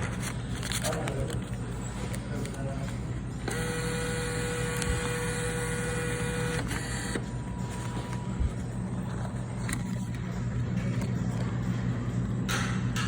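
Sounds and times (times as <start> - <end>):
vending machine motor whirring: 3.3 - 11.6.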